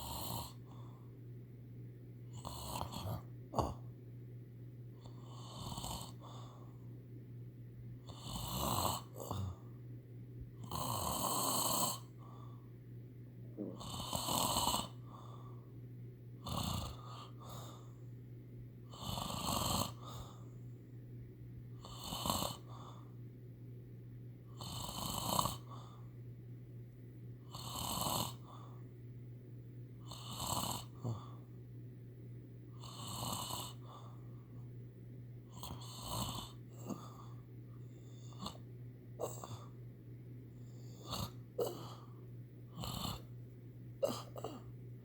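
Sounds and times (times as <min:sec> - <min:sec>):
person snoring: 0:00.0 - 0:01.0, 0:02.3 - 0:03.9, 0:05.0 - 0:06.6, 0:08.0 - 0:09.7, 0:10.6 - 0:12.4, 0:13.6 - 0:15.6, 0:16.4 - 0:17.8, 0:18.9 - 0:20.4, 0:21.8 - 0:23.1, 0:24.5 - 0:26.0, 0:27.4 - 0:28.8, 0:30.0 - 0:31.4, 0:32.8 - 0:34.2, 0:35.5 - 0:39.8, 0:40.7 - 0:43.3
steady low hum: 0:00.0 - 0:45.0.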